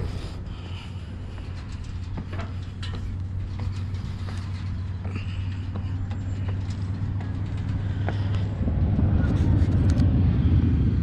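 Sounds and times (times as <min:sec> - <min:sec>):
steps creaking: 0:00.0 - 0:10.0
steady low rumble: 0:00.0 - 0:11.0
footsteps on stairs: 0:00.1 - 0:08.6.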